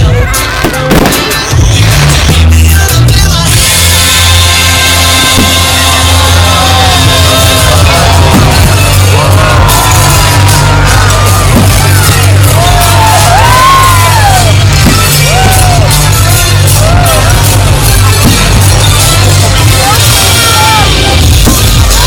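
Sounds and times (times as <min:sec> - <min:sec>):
loud music with heavy bass: 0:00.0 - 0:22.0
crowd whooping and yelling: 0:03.9 - 0:22.0.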